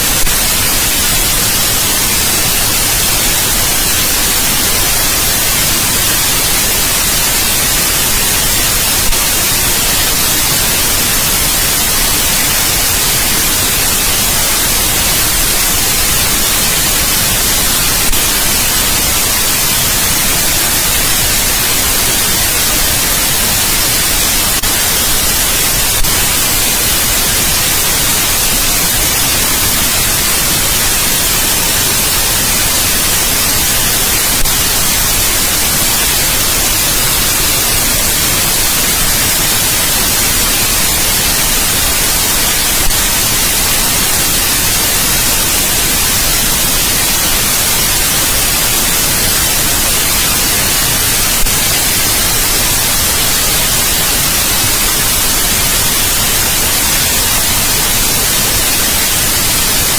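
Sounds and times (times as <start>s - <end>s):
steady white noise hiss: 0.0s - 59.9s.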